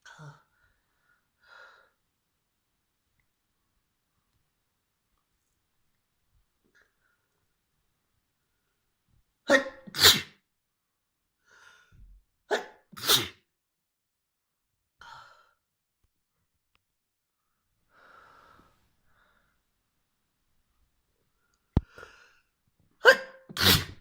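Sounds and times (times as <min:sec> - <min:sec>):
person sneezing: 0:09.5 - 0:10.4, 0:12.5 - 0:13.4, 0:23.0 - 0:24.0
person breathing: 0:11.4 - 0:12.0, 0:17.4 - 0:19.6, 0:21.8 - 0:22.5.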